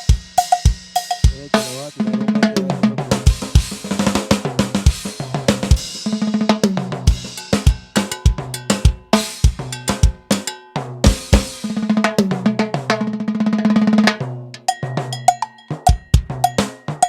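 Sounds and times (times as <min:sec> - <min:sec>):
cymbal and hi-hat strokes: 0:00.0 - 0:02.0, 0:03.2 - 0:06.4, 0:07.1 - 0:11.8
drum kit and timbales: 0:00.0 - 0:17.0.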